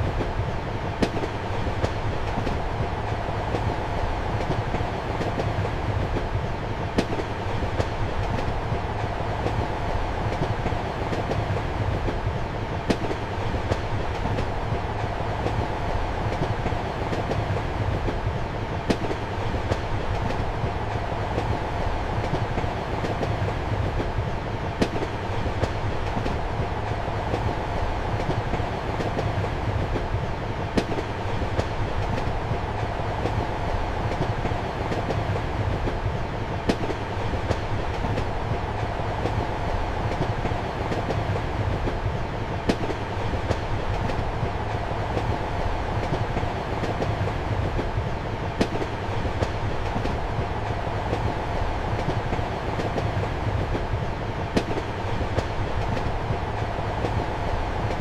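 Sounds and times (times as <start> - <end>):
train rumbling: 0.0 - 58.0
rail joint click: 22.2 - 58.0.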